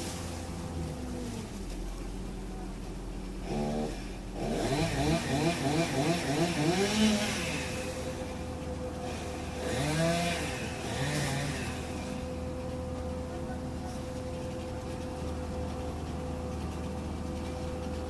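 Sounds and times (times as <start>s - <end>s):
chainsaw revving: 3.4s - 8.3s, 9.0s - 12.3s.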